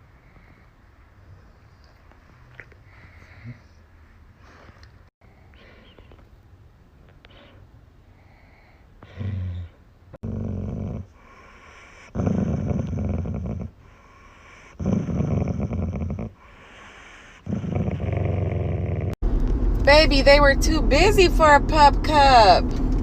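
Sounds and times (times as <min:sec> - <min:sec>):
dog rumbling growl: 0:09.0 - 0:19.2.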